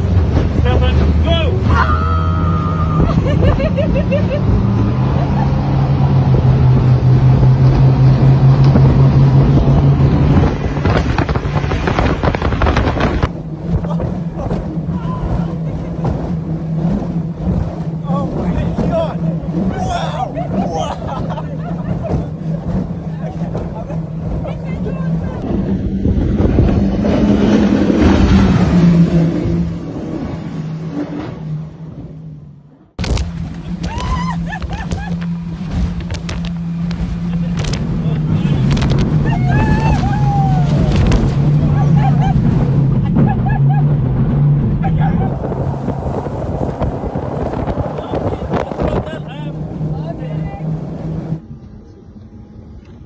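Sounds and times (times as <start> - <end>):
wind on microphone: 0.0 - 30.5, 33.0 - 51.5
speedboat engines droning: 0.0 - 53.0
water noise: 0.0 - 53.0.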